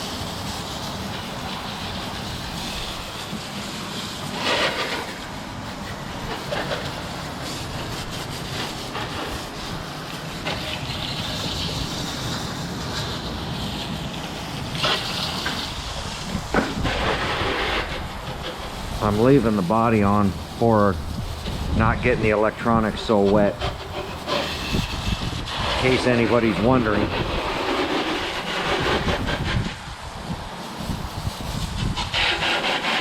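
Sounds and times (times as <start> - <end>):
water hose spraying: 0.0 - 33.0.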